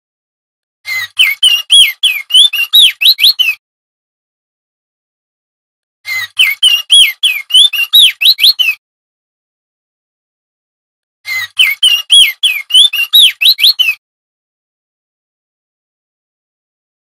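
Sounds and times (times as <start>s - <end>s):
bird whistled song: 0.9s - 3.6s, 6.1s - 8.8s, 11.3s - 14.0s.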